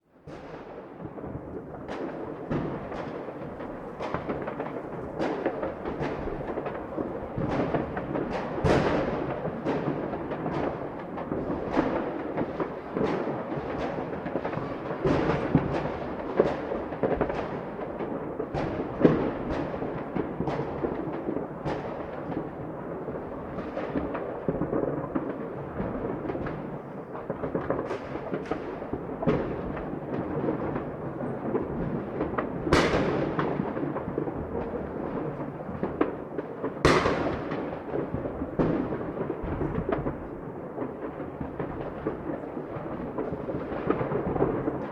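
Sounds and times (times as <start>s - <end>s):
fireworks bangs and bursts: 0.1s - 44.9s
crackle and rumble: 0.2s - 44.9s.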